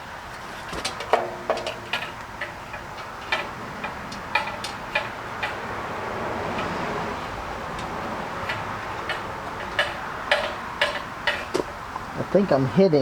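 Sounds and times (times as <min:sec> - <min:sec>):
metal parts clicking and tapping: 0:00.7 - 0:05.7, 0:07.6 - 0:11.8.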